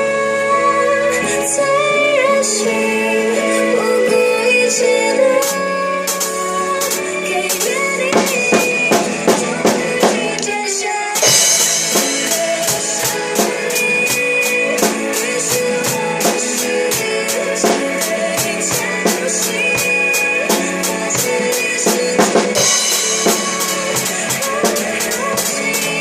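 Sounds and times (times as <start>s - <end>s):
pop ballad backing track: 0.0s - 26.0s
drum kit playing: 5.4s - 10.6s, 11.2s - 26.0s.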